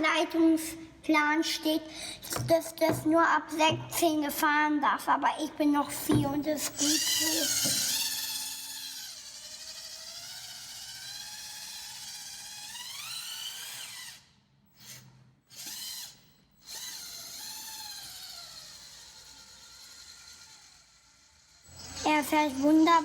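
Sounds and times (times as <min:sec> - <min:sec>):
electric motor whining: 0:06.0 - 0:21.0, 0:21.6 - 0:23.0.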